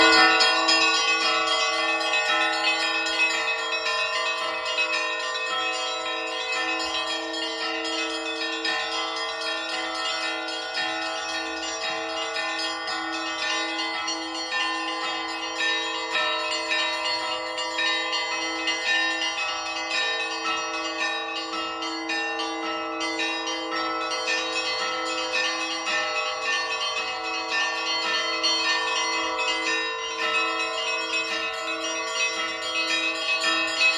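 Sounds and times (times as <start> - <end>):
small high bells striking rapidly: 0.0 - 10.1
large low bell ringing: 0.0 - 33.9.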